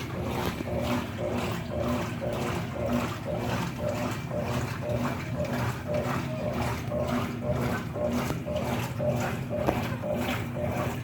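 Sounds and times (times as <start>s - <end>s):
water sloshing in washing machine: 0.0s - 11.0s.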